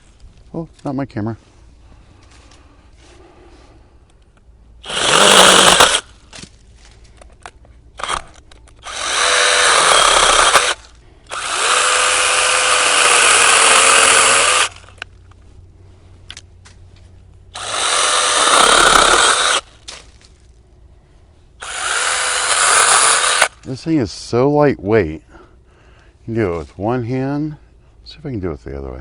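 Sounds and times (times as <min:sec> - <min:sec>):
mini chainsaw buzzing: 0:04.8 - 0:06.1, 0:08.0 - 0:15.0, 0:17.5 - 0:19.7, 0:21.6 - 0:23.6.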